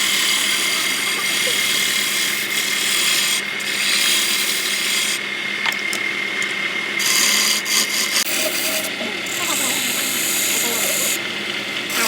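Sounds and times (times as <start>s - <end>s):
tool rasping on wood: 0.0s - 5.2s, 7.0s - 11.2s.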